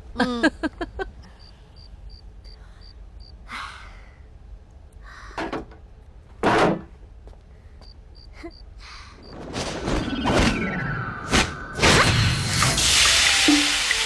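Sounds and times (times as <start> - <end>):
crickets chirping: 1.2 - 3.4, 7.8 - 10.2.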